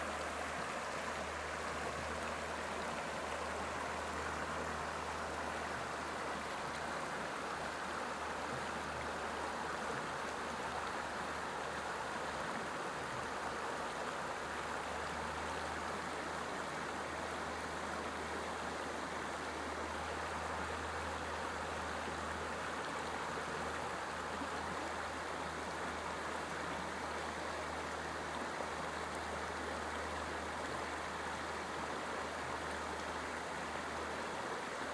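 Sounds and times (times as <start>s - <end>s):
creek water rushing over rapids: 0.0s - 34.9s.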